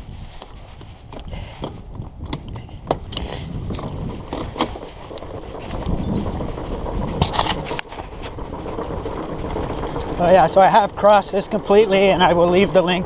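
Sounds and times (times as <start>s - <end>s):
steady low rumble: 0.0s - 13.0s
wind buffeting microphone: 0.0s - 13.0s
sharp clicks and knocks: 1.1s - 10.2s.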